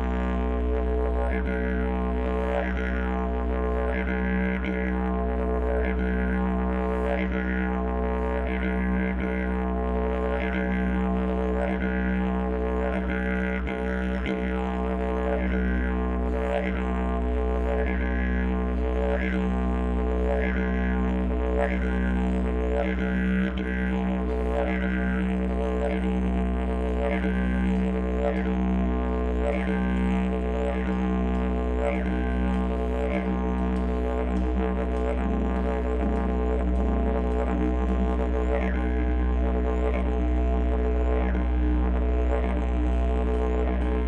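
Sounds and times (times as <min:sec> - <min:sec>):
didgeridoo drone: 0:00.0 - 0:44.0.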